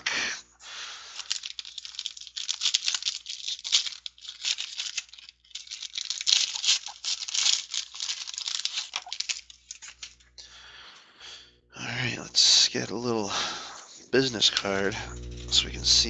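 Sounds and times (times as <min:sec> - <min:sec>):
foil wrapper tearing and crinkling: 0:00.8 - 0:10.3, 0:14.3 - 0:15.9.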